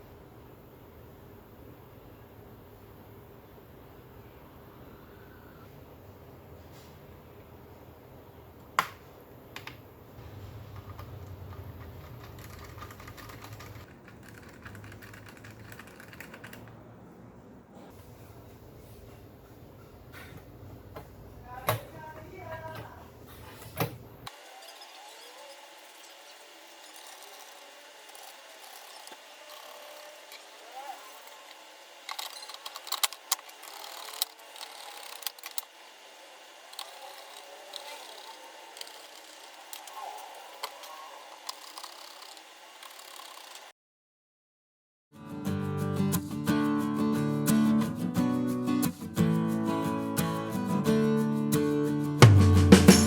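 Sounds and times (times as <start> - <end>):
small hard parts clicking: 31.2 - 35.7.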